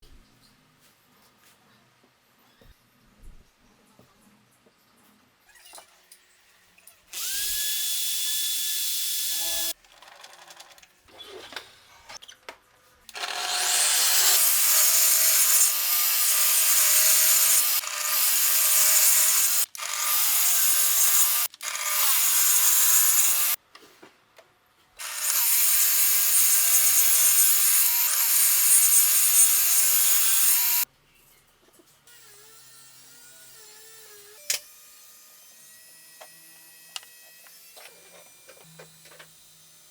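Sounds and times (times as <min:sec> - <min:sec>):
power tool working wood: 0:07.2 - 0:09.8, 0:13.1 - 0:23.6, 0:25.0 - 0:30.8.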